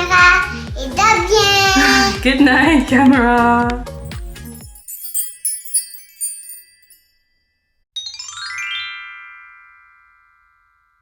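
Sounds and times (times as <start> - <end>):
chiming music jingle: 3.9 - 11.0
rising run of bell-like notes: 4.5 - 11.0.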